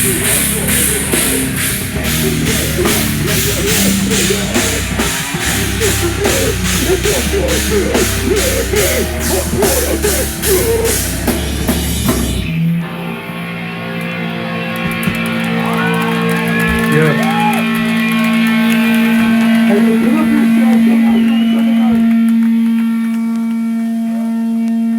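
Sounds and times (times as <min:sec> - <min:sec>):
guitar and amplifier ringing: 0:00.0 - 0:16.4
heavy rock band playing: 0:00.0 - 0:22.2
sliding guitar notes: 0:00.0 - 0:24.9.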